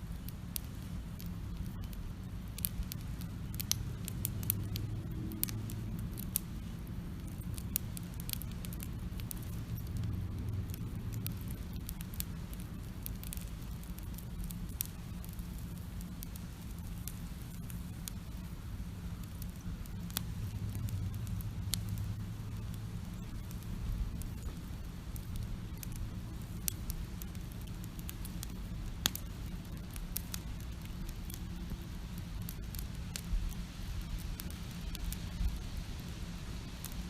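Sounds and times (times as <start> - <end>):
campfire crackling and popping: 0.0 - 37.0
low rumble: 1.3 - 13.4.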